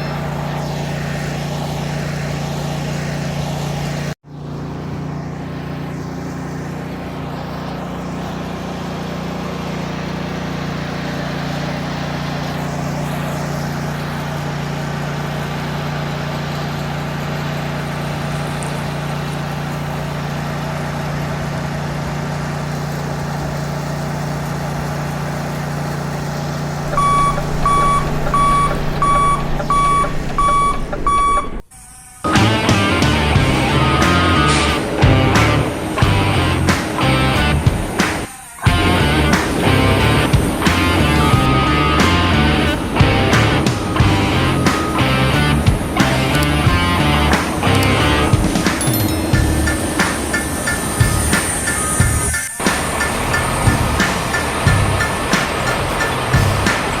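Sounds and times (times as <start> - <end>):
toy vehicle mechanical hum: 5.0 - 57.0
electronic reversing beeps: 26.8 - 54.8.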